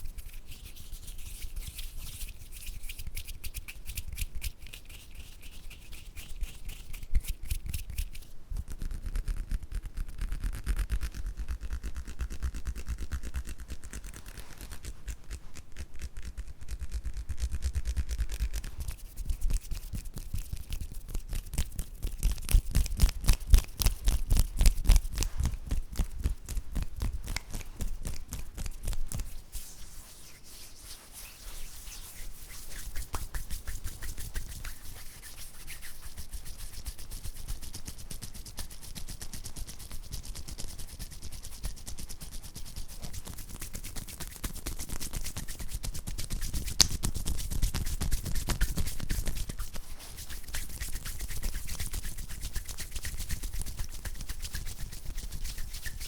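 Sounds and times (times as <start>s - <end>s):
hand clicks and rubs: 0.1s - 40.8s, 42.7s - 56.0s.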